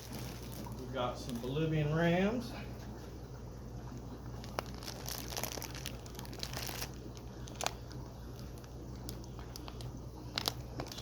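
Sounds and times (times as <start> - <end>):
plastic bag crinkling: 0.0 - 1.6, 4.3 - 11.0.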